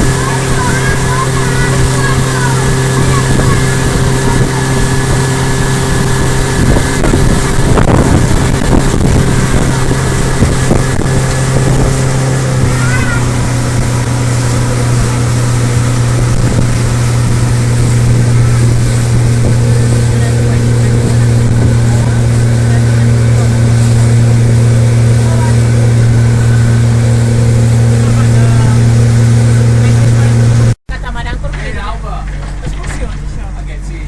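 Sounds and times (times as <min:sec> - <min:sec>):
motorboat engine drone: 0:00.0 - 0:34.0
wind and water rushing: 0:00.0 - 0:34.0.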